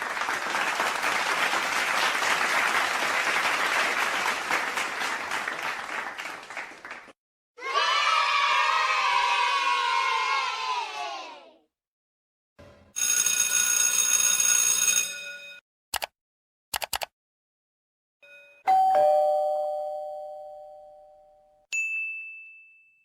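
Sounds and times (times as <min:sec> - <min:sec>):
two-tone doorbell chime: 0:12.9 - 0:15.6, 0:18.2 - 0:23.0
quick clicks: 0:16.0 - 0:17.1.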